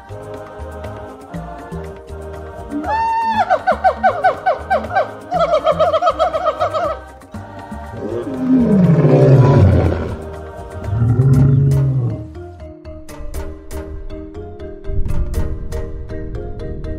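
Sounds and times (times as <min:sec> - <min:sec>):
background music: 0:00.0 - 0:16.9
lion roaring: 0:07.9 - 0:10.3, 0:10.9 - 0:12.4.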